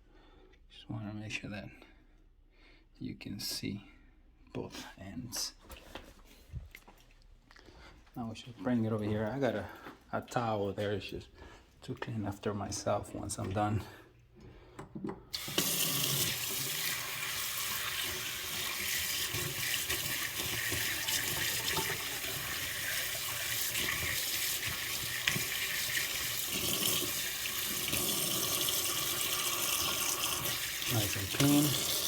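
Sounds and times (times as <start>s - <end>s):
tap water running: 14.7s - 32.0s.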